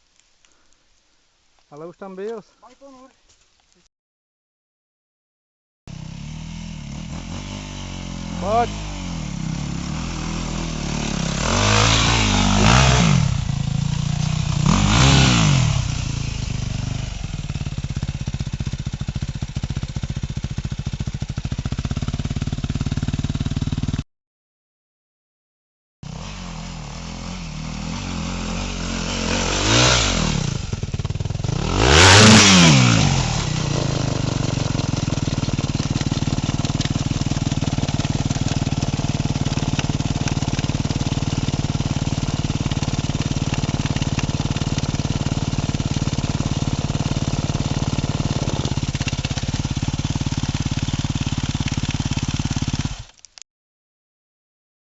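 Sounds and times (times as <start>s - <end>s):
dirt bike engine revving: 5.9s - 24.0s, 26.0s - 53.1s.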